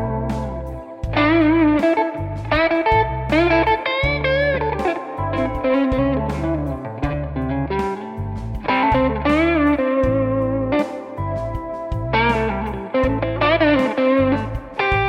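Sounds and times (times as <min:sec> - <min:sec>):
backing track with bass: 0:00.0 - 0:15.0
electric guitar lead lines: 0:00.0 - 0:15.0.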